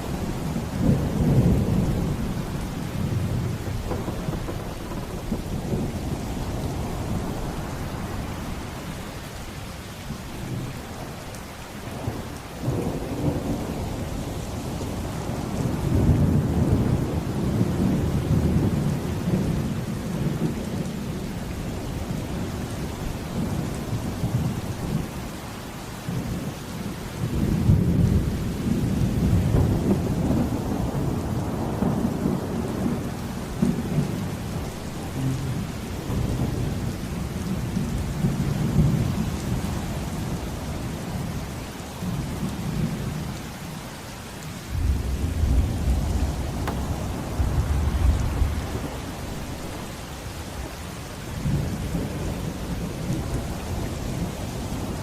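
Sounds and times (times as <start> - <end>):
heavy rain: 0.0 - 55.0
deep rolling thunder: 0.3 - 8.6, 12.0 - 25.3, 27.2 - 39.3, 44.7 - 50.7.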